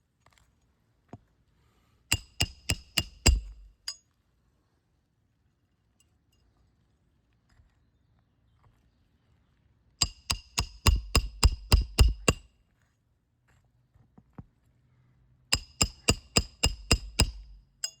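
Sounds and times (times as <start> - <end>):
nail driver clanking metal on metal: 2.1 - 4.0, 15.6 - 18.0.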